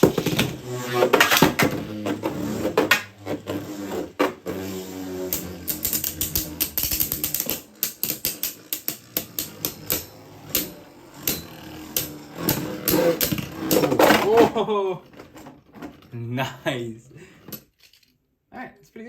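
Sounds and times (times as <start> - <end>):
spinning tops clattering: 5.2 - 14.2.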